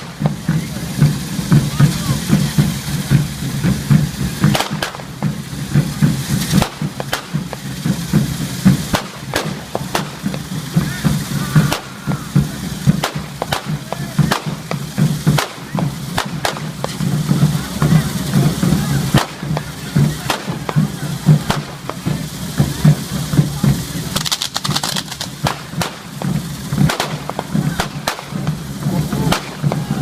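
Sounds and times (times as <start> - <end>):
fast low drumbeat: 0.0 - 30.0
firecracker bangs: 0.0 - 30.0.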